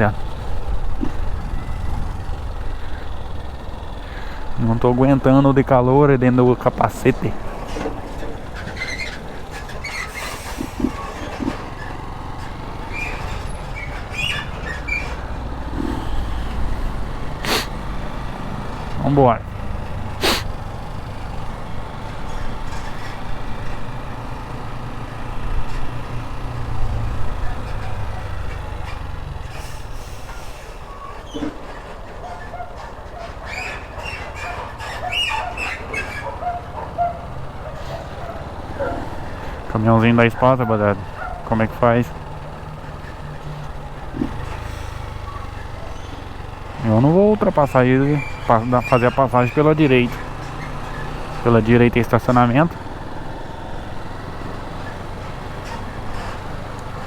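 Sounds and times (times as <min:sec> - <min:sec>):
motorcycle engine droning: 0:00.0 - 0:57.0
short high squeaks: 0:08.6 - 0:16.1, 0:47.6 - 0:51.2.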